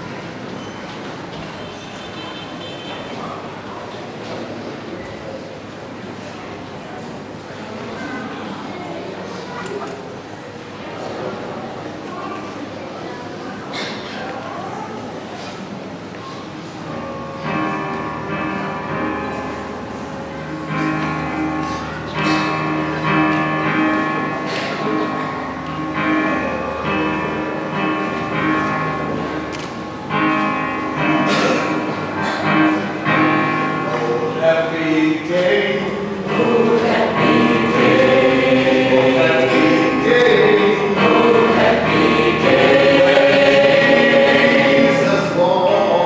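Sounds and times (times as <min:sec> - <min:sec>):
murmur of voices: 0:00.0 - 0:46.0
strummed guitar chords: 0:17.2 - 0:34.5, 0:35.4 - 0:46.0.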